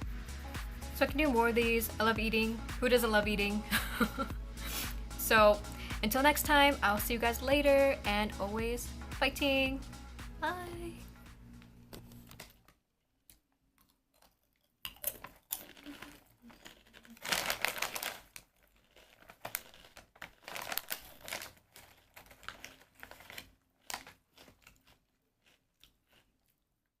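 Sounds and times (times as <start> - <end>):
plastic packaging crinkling: 14.9 - 25.0.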